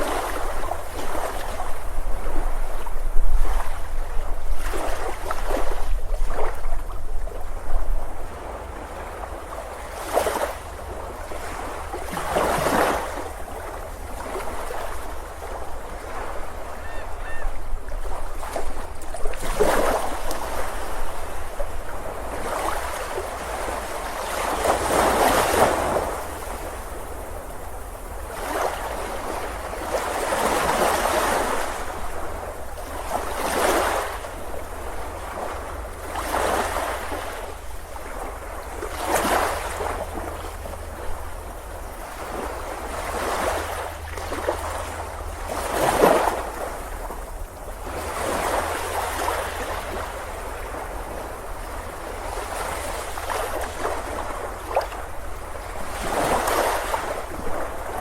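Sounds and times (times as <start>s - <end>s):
ocean surf breaking: 8.3s - 27.7s.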